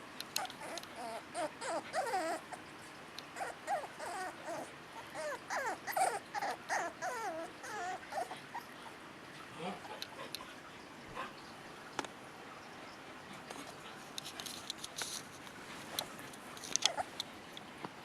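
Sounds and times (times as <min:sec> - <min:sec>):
puppy whining: 0:00.4 - 0:09.0, 0:16.7 - 0:17.2.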